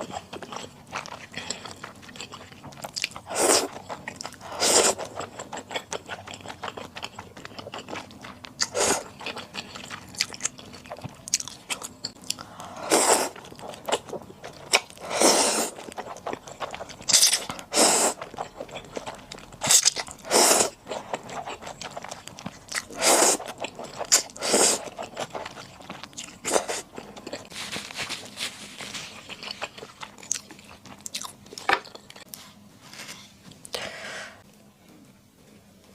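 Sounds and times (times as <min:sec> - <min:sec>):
wet chewing and biting: 0:00.0 - 0:12.5, 0:15.7 - 0:32.4.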